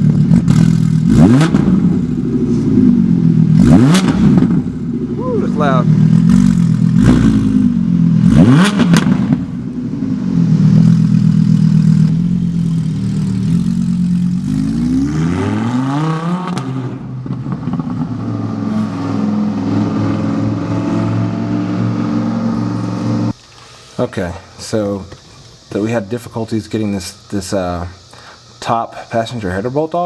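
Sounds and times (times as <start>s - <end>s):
car engine revving: 0.0s - 23.4s
loud exhaust drone: 0.0s - 23.4s.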